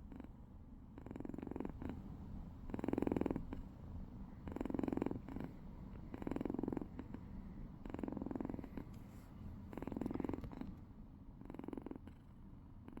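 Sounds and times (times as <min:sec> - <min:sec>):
kitten purring: 0:02.7 - 0:03.7, 0:04.4 - 0:08.9, 0:09.7 - 0:10.8, 0:11.4 - 0:13.0.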